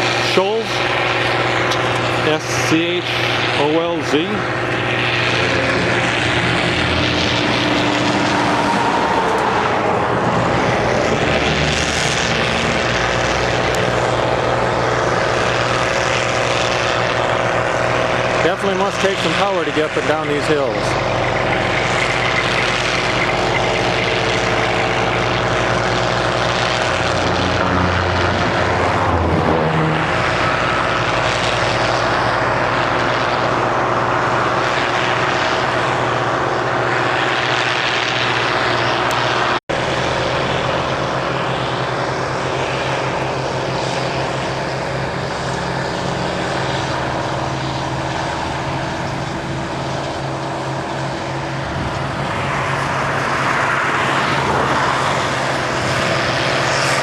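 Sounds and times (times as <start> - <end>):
heavy engine droning: 0.0 - 57.0.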